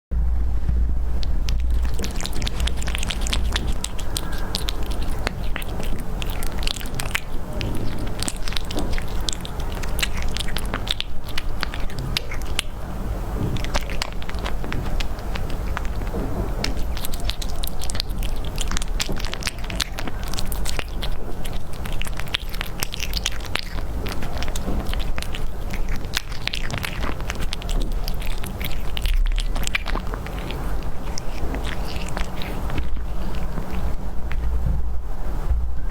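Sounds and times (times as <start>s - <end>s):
low rumble: 0.0s - 11.0s, 31.2s - 35.9s
cat chewing meat: 1.2s - 35.0s.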